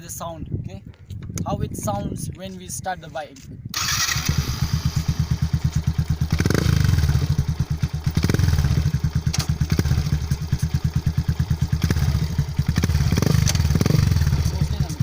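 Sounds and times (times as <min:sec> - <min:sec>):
motorcycle engine idling: 0:03.8 - 0:15.0.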